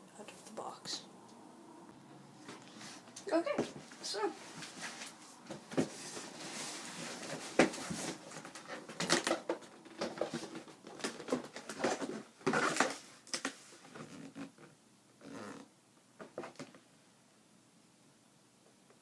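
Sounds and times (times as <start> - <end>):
cardboard and paper rustling: 2.4 - 14.4.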